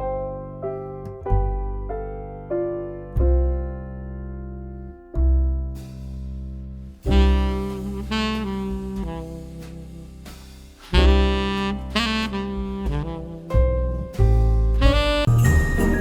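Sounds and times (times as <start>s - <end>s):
piano: 0.0s - 16.0s
jazzy saxophone: 7.0s - 16.0s.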